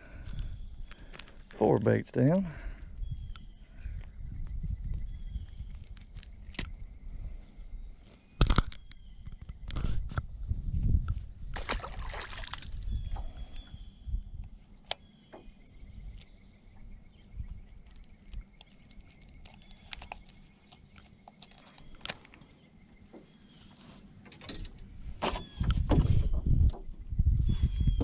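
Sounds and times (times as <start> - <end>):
low thumps and rumbling: 24.8 - 28.0.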